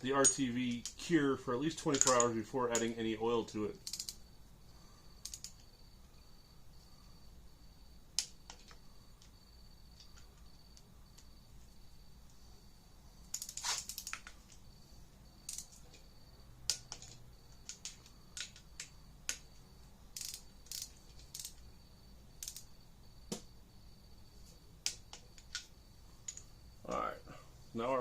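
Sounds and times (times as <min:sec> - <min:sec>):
torque wrench ratchet clicks: 0:01.8 - 0:02.9, 0:03.8 - 0:04.2, 0:05.2 - 0:05.6, 0:20.2 - 0:21.6, 0:22.4 - 0:22.7.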